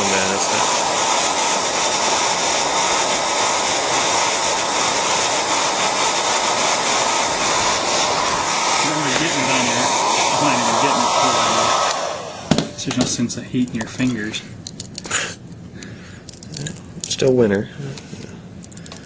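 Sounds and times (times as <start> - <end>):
hair dryer blowing: 0.0 - 13.4.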